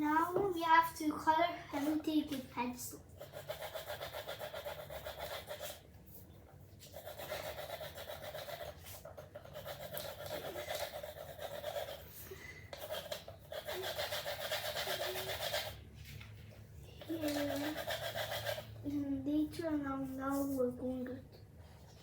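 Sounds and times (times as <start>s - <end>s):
pencil scribbling on paper: 3.0s - 15.9s, 17.0s - 19.0s.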